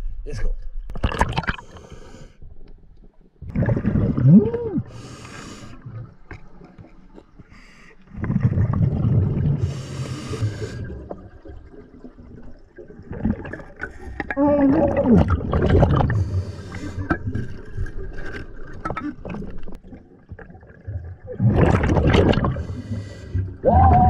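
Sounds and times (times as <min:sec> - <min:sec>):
water gurgling in tube: 0:00.9 - 0:01.8, 0:03.4 - 0:05.2, 0:08.1 - 0:24.0
breathing through snorkel: 0:01.5 - 0:02.4, 0:04.9 - 0:05.9, 0:09.6 - 0:11.0, 0:16.0 - 0:17.3, 0:22.4 - 0:23.6.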